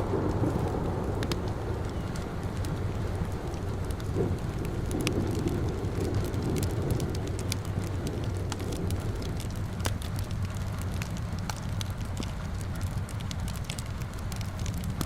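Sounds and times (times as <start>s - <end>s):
low rumble: 0.0s - 10.0s
fire crackling and popping: 0.0s - 15.0s
steady rain: 0.0s - 15.0s.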